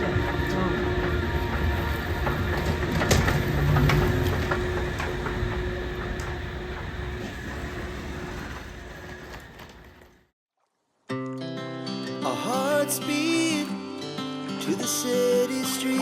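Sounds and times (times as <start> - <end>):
constant hum: 0.0 - 10.3.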